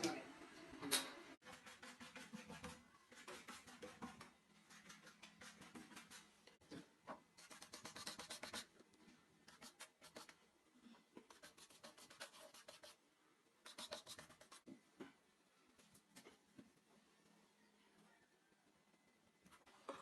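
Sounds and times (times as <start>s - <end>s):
rapid scratching on a surface: 1.4s - 6.4s.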